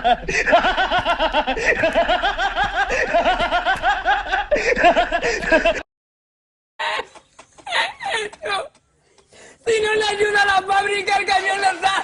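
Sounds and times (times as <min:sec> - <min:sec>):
person snickering laugh: 0:06.8 - 0:08.7.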